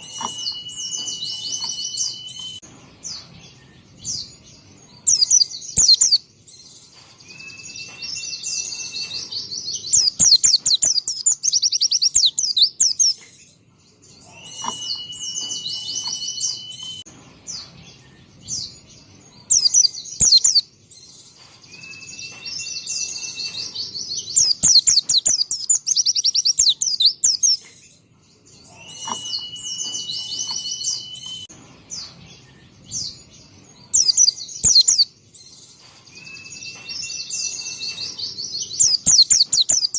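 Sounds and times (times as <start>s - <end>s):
bird singing trills and whistles: 0.0s - 39.9s.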